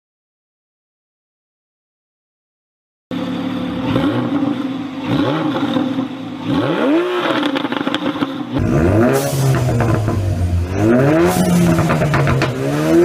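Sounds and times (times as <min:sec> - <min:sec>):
car engine revving: 0:03.1 - 0:13.0
different engine sound: 0:03.1 - 0:13.0
exhaust crackles and pops: 0:09.4 - 0:13.0.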